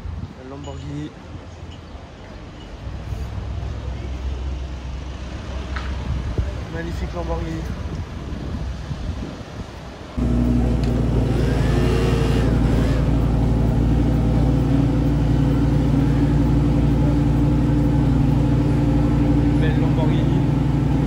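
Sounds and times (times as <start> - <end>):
car engine idling: 10.2 - 21.0.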